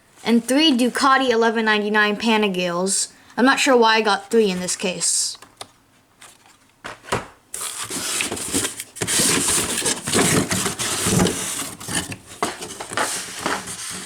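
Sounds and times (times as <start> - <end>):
plastic blister packs rustling: 6.2 - 14.0.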